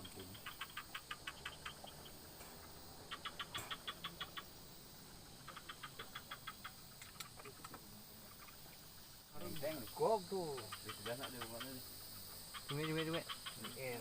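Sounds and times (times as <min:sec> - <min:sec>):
animal chirping rapidly: 0:00.0 - 0:04.6, 0:05.3 - 0:07.3, 0:09.4 - 0:14.0.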